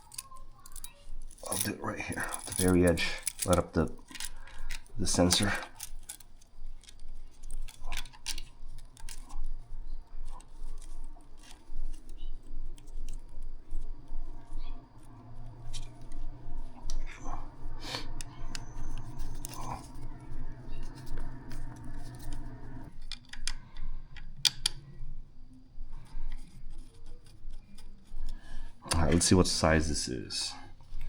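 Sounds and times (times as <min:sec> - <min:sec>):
metal handling clicks: 0:00.0 - 0:09.5, 0:20.8 - 0:25.0
steady low hum: 0:00.0 - 0:31.0.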